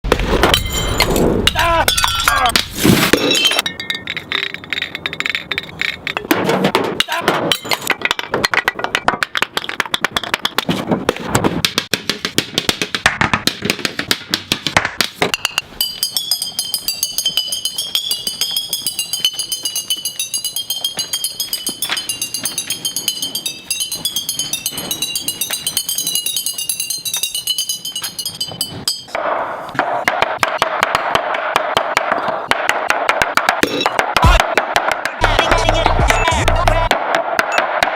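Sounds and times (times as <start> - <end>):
glass bottles knocking and clinking: 0.5 - 10.7, 15.3 - 29.2
high glassy ringing tone: 15.8 - 29.2.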